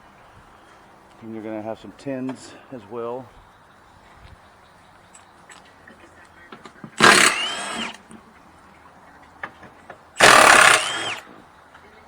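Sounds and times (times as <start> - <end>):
cordless power tool whine: 7.0 - 8.0, 10.2 - 11.3.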